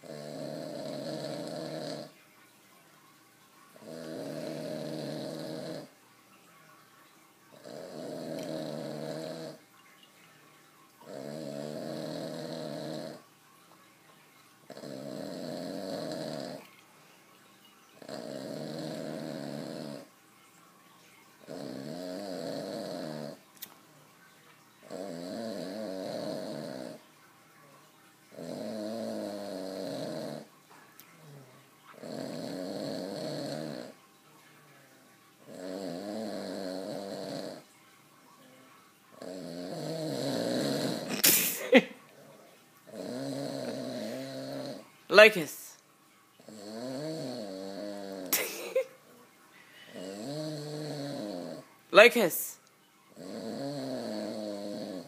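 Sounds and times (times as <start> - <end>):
person snoring: 0.0 - 2.2, 3.8 - 5.9, 7.6 - 9.6, 11.0 - 13.2, 14.7 - 16.6, 18.0 - 20.1, 21.5 - 23.4, 24.9 - 27.0, 28.4 - 30.5, 31.2 - 34.0, 35.5 - 37.6, 39.2 - 45.5, 46.4 - 48.8, 49.7 - 51.7, 53.2 - 55.0.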